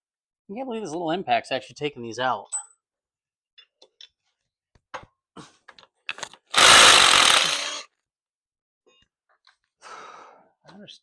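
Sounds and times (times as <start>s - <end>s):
impact wrench running: 6.5s - 7.9s.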